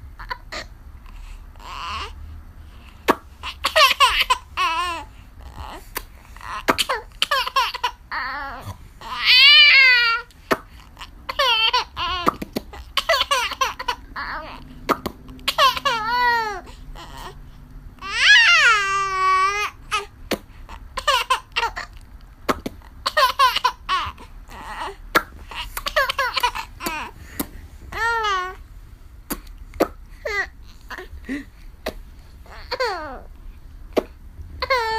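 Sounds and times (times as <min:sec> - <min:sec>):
baby laughing: 0:03.4 - 0:05.0, 0:06.4 - 0:17.4, 0:21.0 - 0:22.0, 0:23.0 - 0:28.6.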